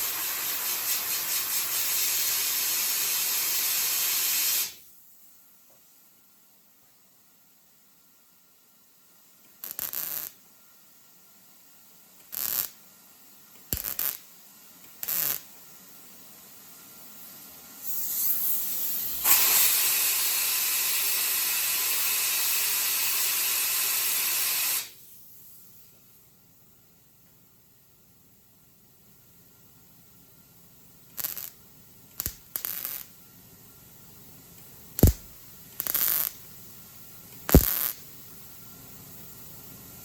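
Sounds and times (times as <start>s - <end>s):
short bursts of noise: 9.6s - 10.4s, 37.4s - 38.0s
compressed-air blow gun hissing: 17.8s - 25.0s.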